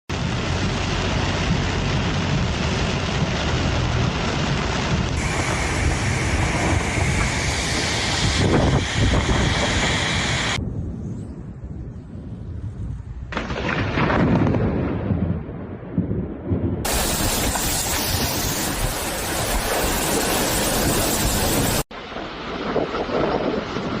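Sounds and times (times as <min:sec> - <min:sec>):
heavy rain: 0:00.1 - 0:10.6, 0:16.8 - 0:24.0
wind buffeting microphone: 0:00.1 - 0:21.8.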